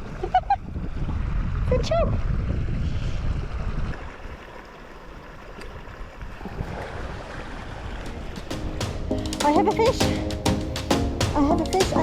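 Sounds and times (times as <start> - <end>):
shallow river rushing: 4.1 - 12.0.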